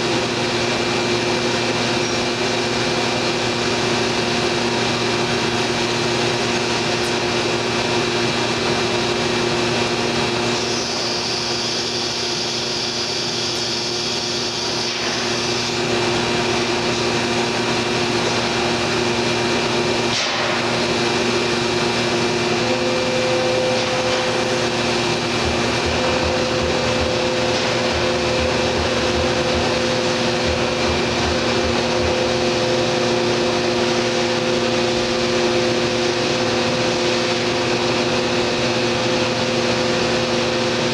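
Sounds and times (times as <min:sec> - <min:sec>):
cnc router machine hum: 0:00.0 - 0:40.9
high whine: 0:22.0 - 0:36.2.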